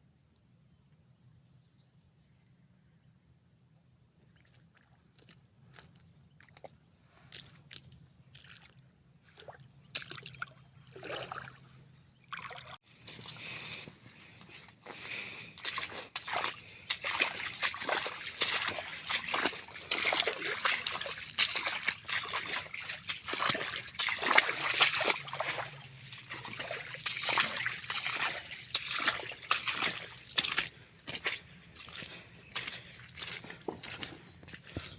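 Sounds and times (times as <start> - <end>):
water splashing and sloshing: 7.3 - 34.9.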